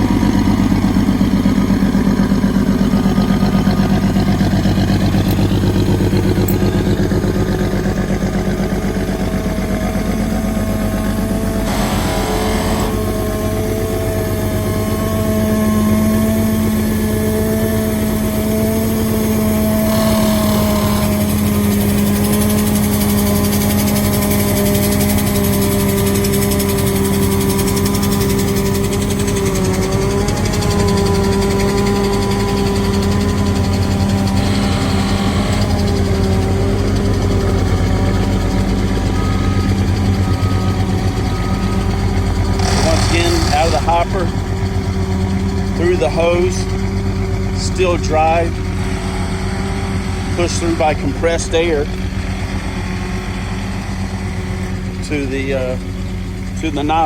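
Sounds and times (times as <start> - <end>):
engine droning under load: 0.0 - 57.0.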